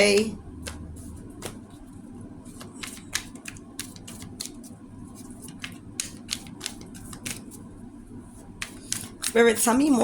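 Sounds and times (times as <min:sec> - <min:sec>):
cards being shuffled: 0:00.0 - 0:01.8, 0:02.5 - 0:07.6, 0:08.6 - 0:09.4.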